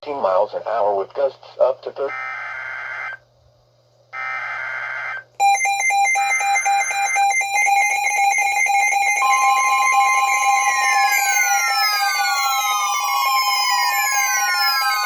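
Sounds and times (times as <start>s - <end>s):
rapid electronic alarm beeping: 4.2s - 15.0s
steady alert tone: 5.4s - 15.0s.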